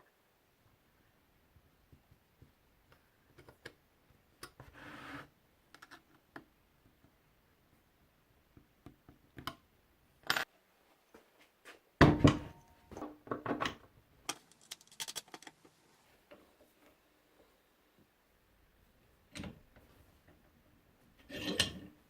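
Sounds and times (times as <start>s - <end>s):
hard objects clattering: 14.3s - 15.6s.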